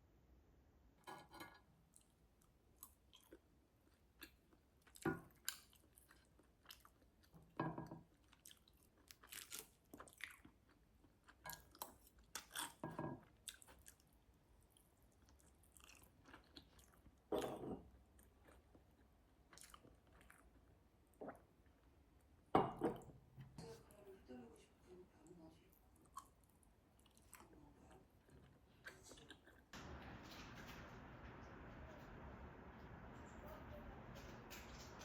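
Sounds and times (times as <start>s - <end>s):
person chewing food: 1.9s - 22.4s, 25.9s - 29.7s.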